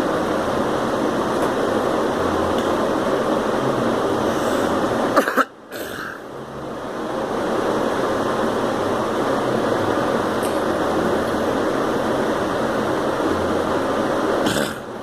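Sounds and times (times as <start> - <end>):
fan-like background hiss: 0.0 - 15.0
girl coughing: 5.2 - 6.2.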